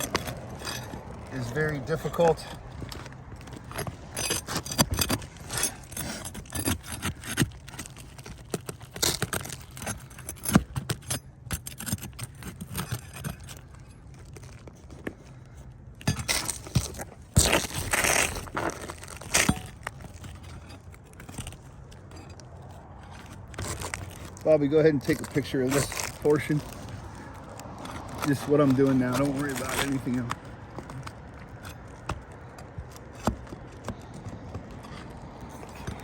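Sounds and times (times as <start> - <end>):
shingles being scraped loose: 0.0 - 36.0.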